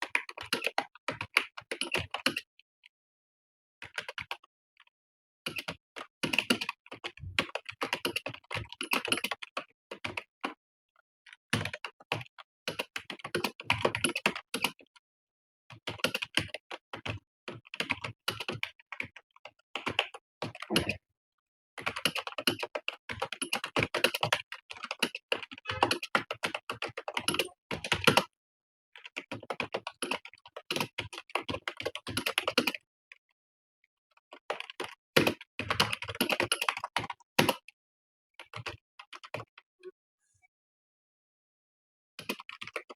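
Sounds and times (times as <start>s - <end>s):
computer keyboard typing: 10.0s - 10.2s, 11.5s - 14.8s, 15.8s - 19.2s, 19.8s - 21.0s, 21.8s - 28.2s, 29.0s - 32.8s, 34.4s - 37.6s, 38.4s - 39.5s, 42.3s - 42.9s.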